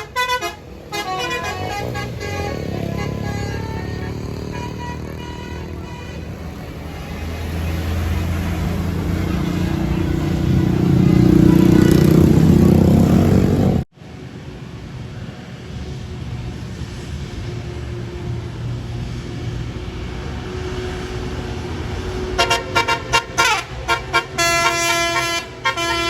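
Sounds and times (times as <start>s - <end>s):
multi-tone bus horn: 0.0s - 13.8s, 21.8s - 26.0s
bus engine driving past: 0.0s - 26.0s
traffic noise: 0.0s - 26.0s.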